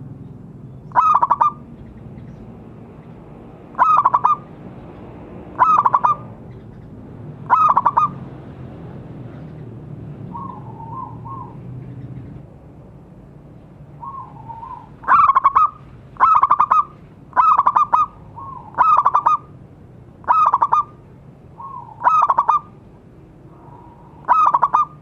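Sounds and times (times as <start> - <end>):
dove cooing: 0.9 - 1.7, 3.7 - 4.6, 5.5 - 6.8, 7.4 - 8.2, 10.3 - 12.3, 14.0 - 19.5, 20.2 - 21.0, 21.6 - 22.7, 23.5 - 25.0.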